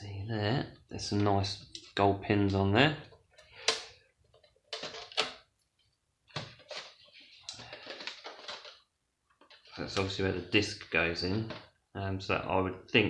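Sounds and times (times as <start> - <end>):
plastic parts clicking and rattling: 3.1 - 5.5, 6.3 - 9.7.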